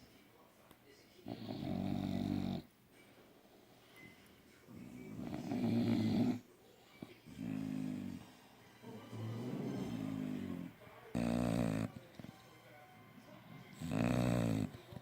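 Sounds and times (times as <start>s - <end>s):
dog snoring: 1.2s - 2.7s, 4.7s - 6.5s, 7.2s - 8.3s, 9.0s - 12.4s, 13.4s - 15.0s.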